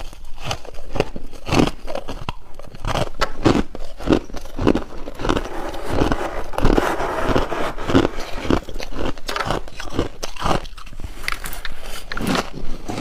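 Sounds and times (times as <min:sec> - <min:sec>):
biting crunchy ice: 0:00.0 - 0:05.5, 0:08.4 - 0:13.0
grinding chew: 0:00.0 - 0:13.0.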